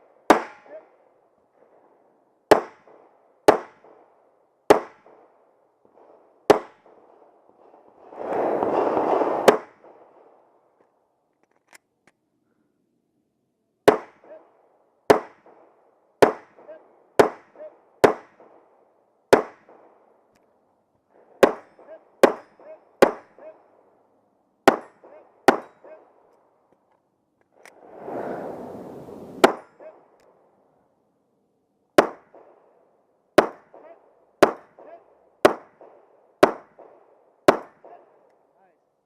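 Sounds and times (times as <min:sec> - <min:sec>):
pistol shots with echo: 0:00.2 - 0:01.0, 0:01.7 - 0:07.3, 0:13.8 - 0:20.3, 0:21.4 - 0:24.0, 0:24.6 - 0:26.3, 0:32.0 - 0:38.5.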